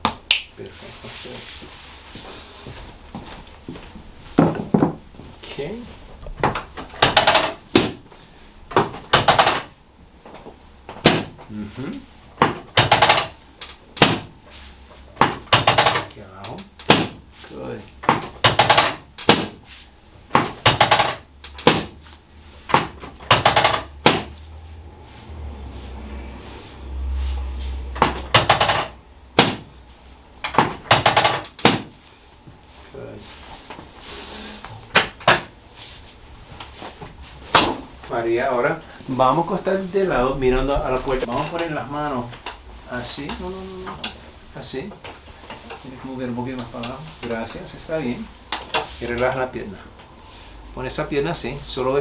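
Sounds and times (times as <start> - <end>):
adjusting hammer tapping: 20.3 - 21.9.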